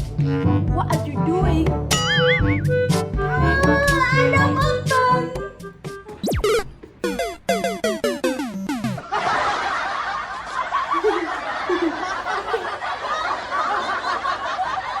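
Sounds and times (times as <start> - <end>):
falling electronic notes: 6.1 - 9.1
canned audience laughter: 9.0 - 15.0.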